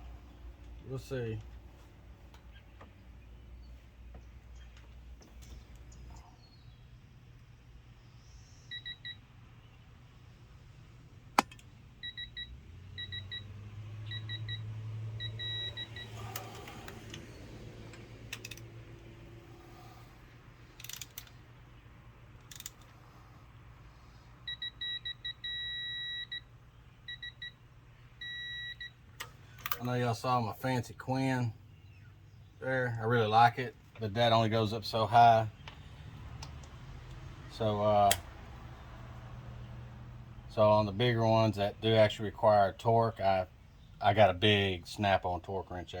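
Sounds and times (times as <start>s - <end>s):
torque wrench beeping: 15.2s - 16.9s.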